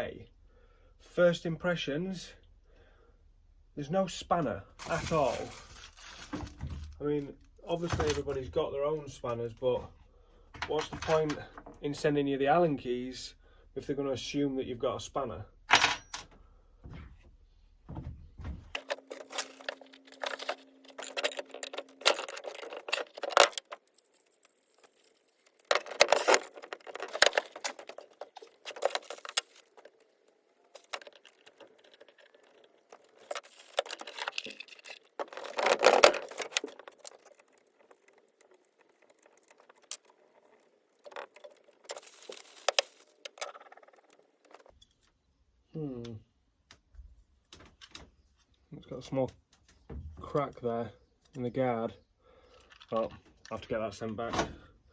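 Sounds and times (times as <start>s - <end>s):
packaging rustling: 4.8s - 7.0s, 18.8s - 44.7s
small metal parts clinking: 4.8s - 7.0s, 10.6s - 11.8s, 18.8s - 45.0s, 52.6s - 53.6s.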